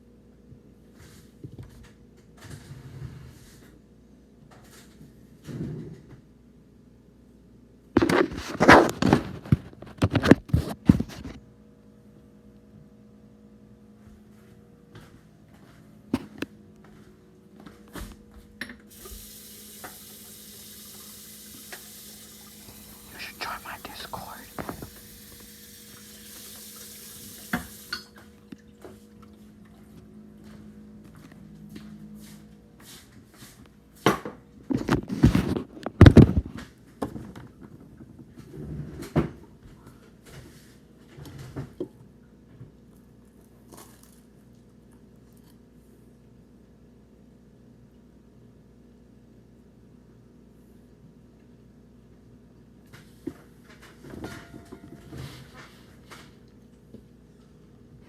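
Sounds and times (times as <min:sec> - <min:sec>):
steady hiss: 0:18.9 - 0:28.0.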